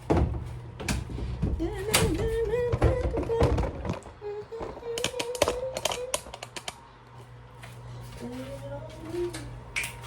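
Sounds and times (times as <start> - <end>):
faint wavering hum: 0.0 - 10.0.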